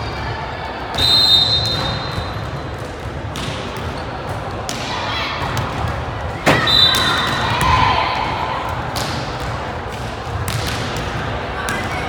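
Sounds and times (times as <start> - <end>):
gym crowd noise: 0.0 - 12.0
volleyball struck hard: 6.4 - 7.8.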